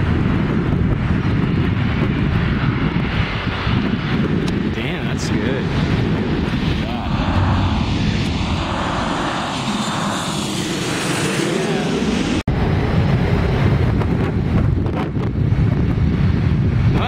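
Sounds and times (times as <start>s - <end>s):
jet airliner passing overhead: 0.0s - 17.0s
wind rumbling on microphone: 0.0s - 17.0s.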